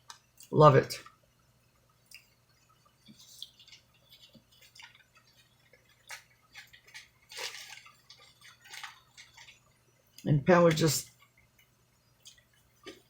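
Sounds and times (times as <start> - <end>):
packaging rustling: 3.1 - 9.6.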